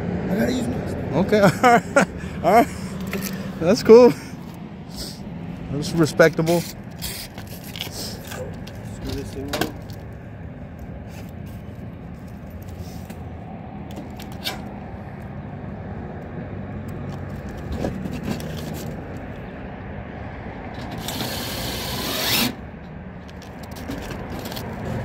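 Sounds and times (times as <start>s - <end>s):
cordless drill whining: 21.0s - 22.6s.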